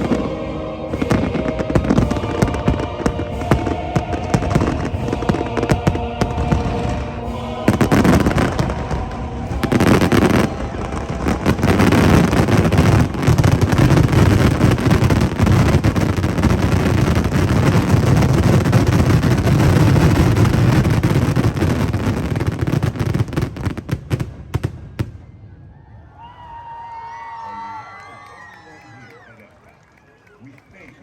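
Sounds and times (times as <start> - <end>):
fireworks bursting and crackling: 0.0 - 25.5
loud fireworks bangs: 0.0 - 25.8.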